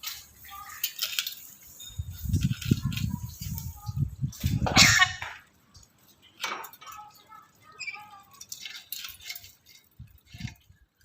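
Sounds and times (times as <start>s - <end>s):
parrot calls and chatter: 0.0s - 11.0s.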